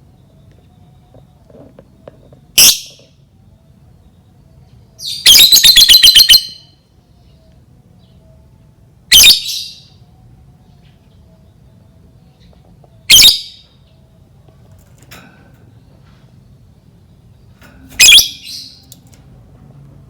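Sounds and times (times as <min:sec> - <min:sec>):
bird chirping shrilly: 0:05.0 - 0:06.7, 0:13.1 - 0:13.6, 0:17.9 - 0:19.0
bird rattling trill: 0:17.5 - 0:19.2.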